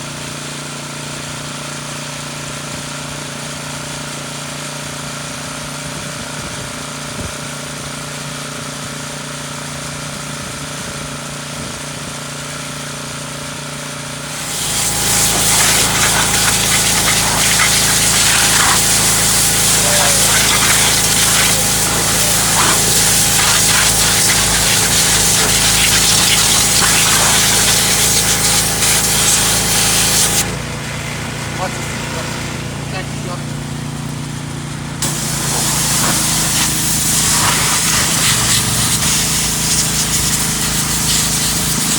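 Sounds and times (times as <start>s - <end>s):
pressure washer engine running: 12.3s - 41.9s
high-pressure water spray hissing: 14.2s - 30.7s, 35.0s - 41.9s.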